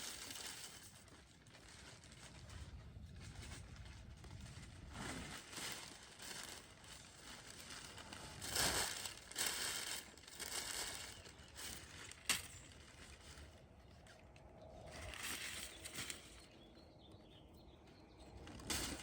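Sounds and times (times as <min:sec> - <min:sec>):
paper crumpling: 0:00.0 - 0:13.6.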